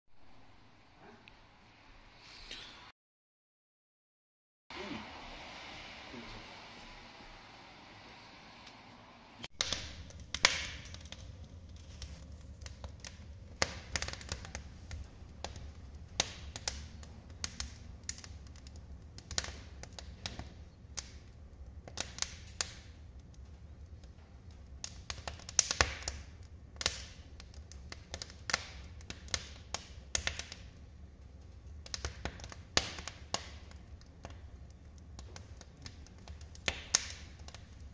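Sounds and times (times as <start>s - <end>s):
low fire rumble: 4.7s - 37.9s
wood fire popping and snapping: 8.6s - 37.9s.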